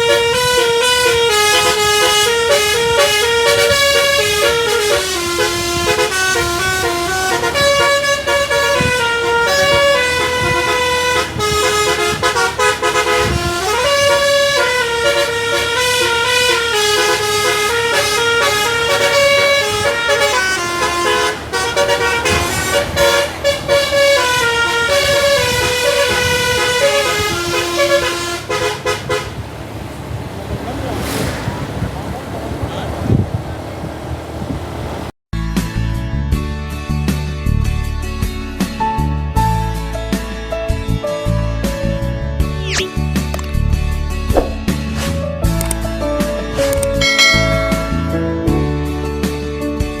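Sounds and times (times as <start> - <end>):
musical air horn melody: 0.0 - 29.4, 47.0 - 49.2.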